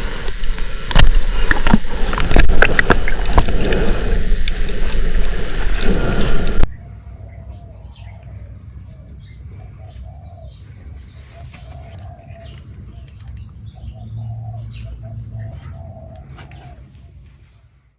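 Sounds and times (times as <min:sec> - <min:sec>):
bird cooing: 0:06.7 - 0:17.2.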